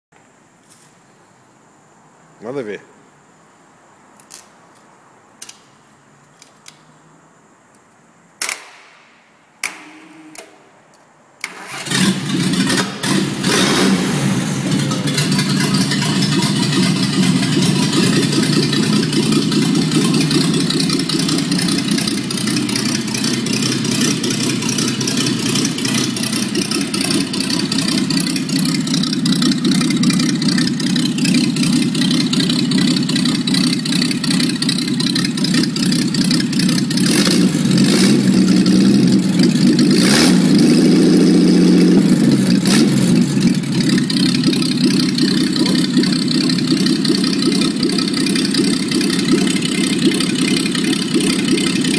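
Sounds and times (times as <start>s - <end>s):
engine starting and running: 11.4s - 51.9s
engine clicks: 14.7s - 37.2s, 42.5s - 51.9s.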